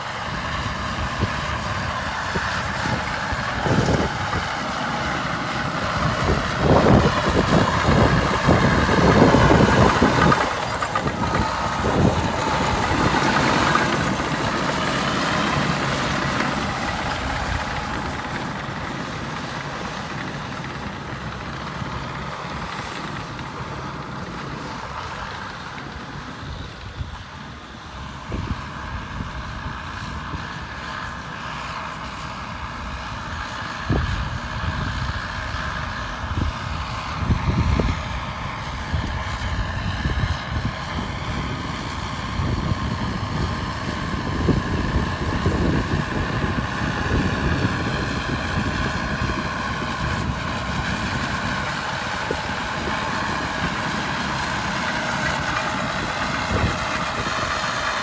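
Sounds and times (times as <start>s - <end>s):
diesel engine whining: 0.0s - 58.0s.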